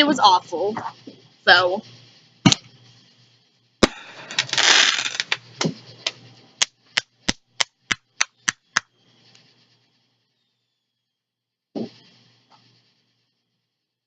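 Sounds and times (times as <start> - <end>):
firework bang: 3.8 - 5.8
crackling firework burst: 3.8 - 6.1
sharp firework pops: 3.8 - 8.9.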